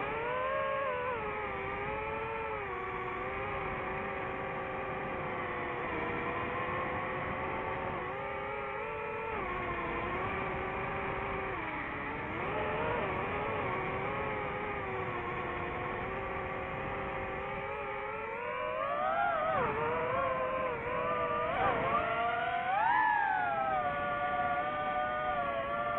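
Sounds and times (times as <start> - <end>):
drone motors whining: 0.0 - 25.9.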